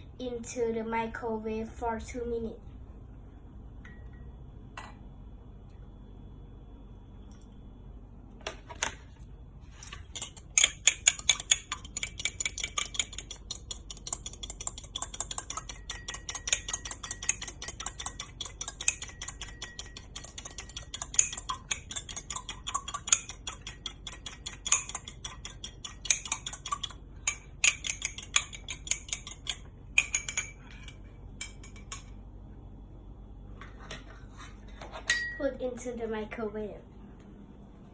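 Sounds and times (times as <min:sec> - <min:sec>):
utensil clicking against a cup: 0:10.1 - 0:30.5.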